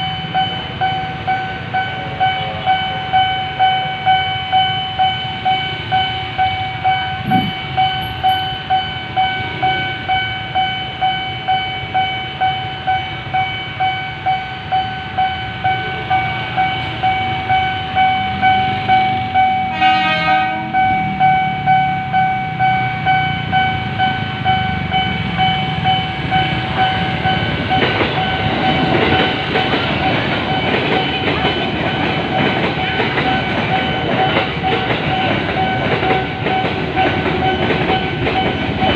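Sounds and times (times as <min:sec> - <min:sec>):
level-crossing warning siren: 0:00.0 - 0:38.9
train wheels clattering on rails: 0:00.0 - 0:38.9
train horn blast: 0:19.7 - 0:20.9.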